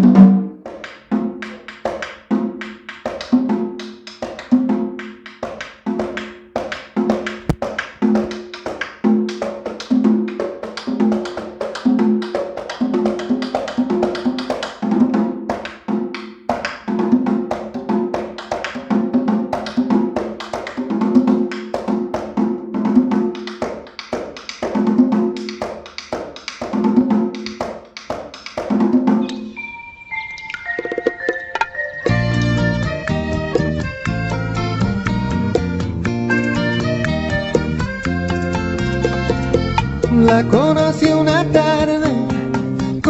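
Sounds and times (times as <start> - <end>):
drums in fast driving rhythm: 9.4 - 29.3.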